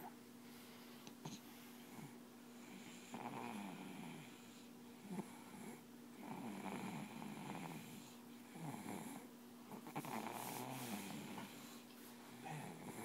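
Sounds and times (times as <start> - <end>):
steady low hum: 0.0 - 13.0
person snoring: 9.8 - 11.6, 12.4 - 13.0.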